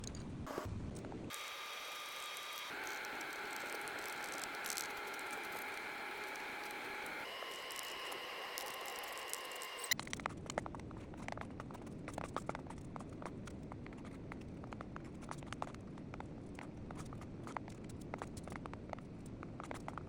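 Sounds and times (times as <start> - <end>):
faint steady tones: 0.0 - 10.0.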